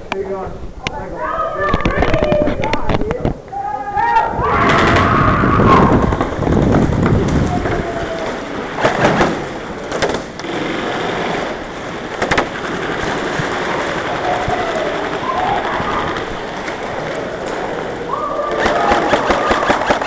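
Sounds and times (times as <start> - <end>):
noisy background: 0.0 - 20.0
airsoft guns popping: 8.8 - 10.6, 12.2 - 16.6, 18.5 - 20.0.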